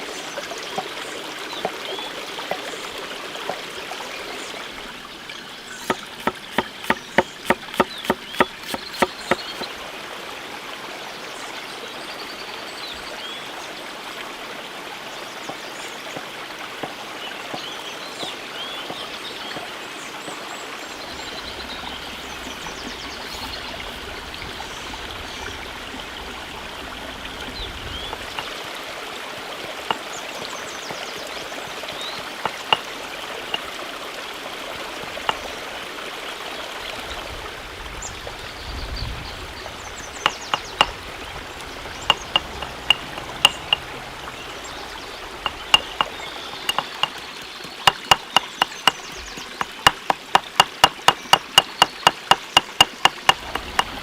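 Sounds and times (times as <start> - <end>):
steady rushing like water: 0.0 - 54.0
sharp knocks: 5.8 - 9.7, 28.1 - 28.5, 32.4 - 32.9, 40.3 - 41.0, 42.1 - 43.9, 45.5 - 54.0.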